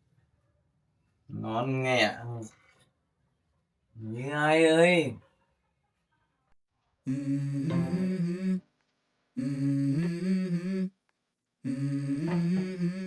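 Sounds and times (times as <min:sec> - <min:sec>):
person humming wordless phrases: 0:07.1 - 0:08.7, 0:09.4 - 0:11.0, 0:11.6 - 0:13.0.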